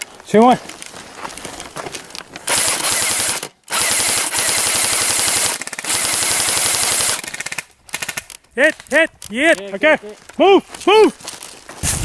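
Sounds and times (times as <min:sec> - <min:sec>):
airsoft gun rapid fire: 0:02.4 - 0:08.4.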